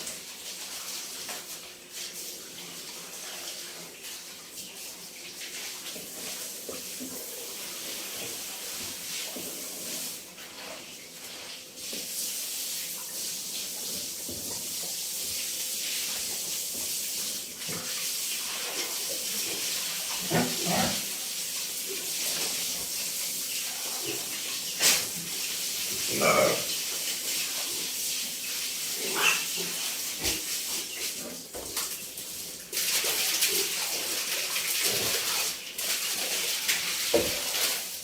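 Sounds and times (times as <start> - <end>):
water spraying hiss: 11.8 - 31.3.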